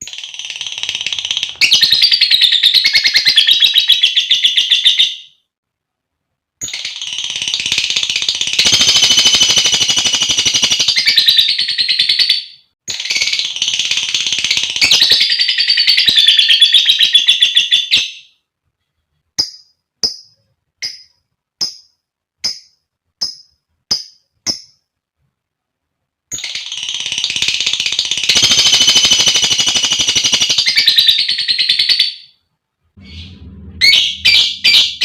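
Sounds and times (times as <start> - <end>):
lovebird sharp chirps: 33.0 - 35.0.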